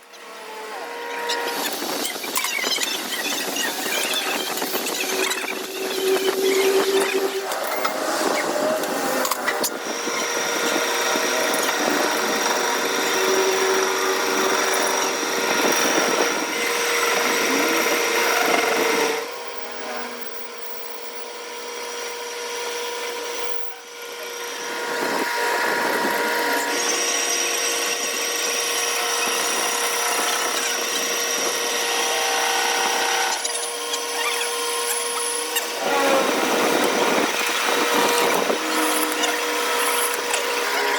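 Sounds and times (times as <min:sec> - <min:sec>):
workshop tool motor whining: 0:00.0 - 0:40.9.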